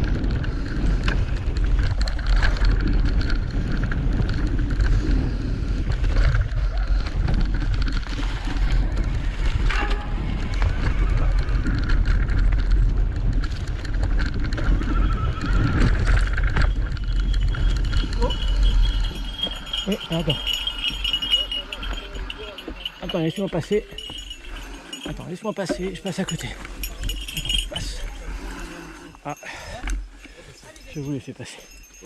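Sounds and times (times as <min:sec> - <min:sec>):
wind rumble on microphone: 0:00.0 - 0:25.1
bike rattling and knocking: 0:00.0 - 0:28.4.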